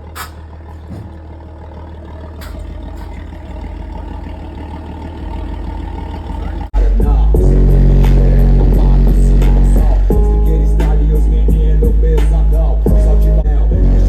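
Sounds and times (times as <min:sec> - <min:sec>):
pickup engine idling: 0:00.0 - 0:14.0.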